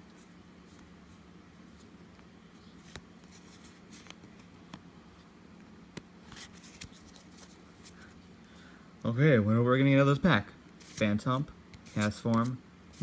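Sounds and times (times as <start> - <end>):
low steady hum: 0.0 - 13.0
cards and wrapper rustling: 6.3 - 8.1.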